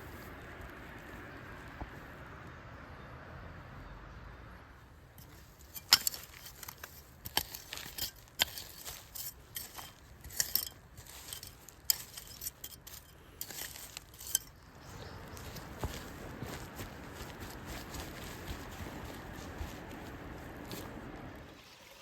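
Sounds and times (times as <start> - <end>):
hard objects clinking and knocking: 5.2 - 21.0.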